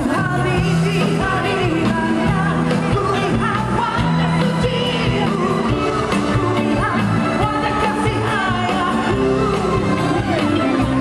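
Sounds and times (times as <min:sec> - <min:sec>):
pop-rock song with singer: 0:00.0 - 0:11.0.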